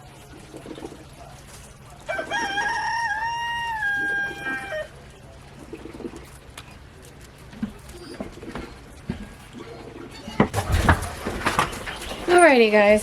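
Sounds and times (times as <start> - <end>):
rooster crowing: 2.1 - 5.0.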